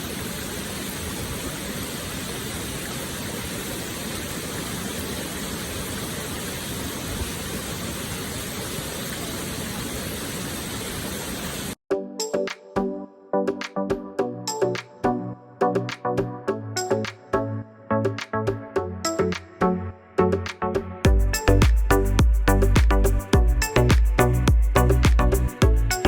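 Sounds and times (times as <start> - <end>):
rushing water of a stream: 0.0 - 11.8
music: 11.9 - 26.0.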